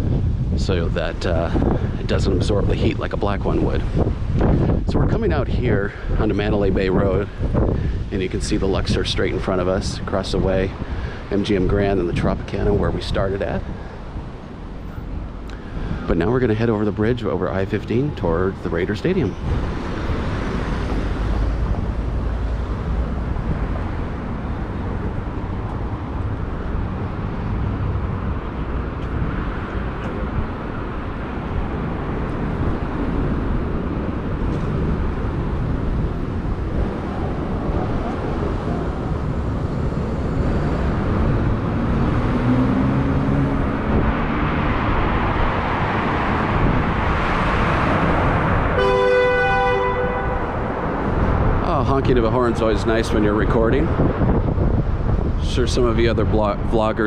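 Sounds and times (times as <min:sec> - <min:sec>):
road traffic noise: 0:00.0 - 0:57.0
vehicle passing: 0:17.5 - 0:55.4
car horn honking: 0:48.7 - 0:50.6.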